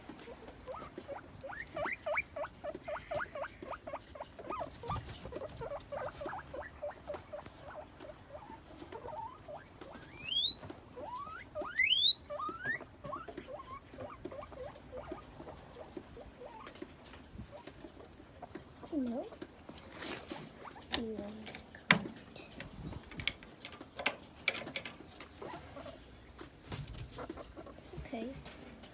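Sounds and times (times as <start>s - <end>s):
guinea pig squeaking: 0.0s - 19.8s, 20.4s - 21.4s, 25.2s - 28.6s
guinea pig loud rising whistles: 10.0s - 10.6s, 11.2s - 12.8s.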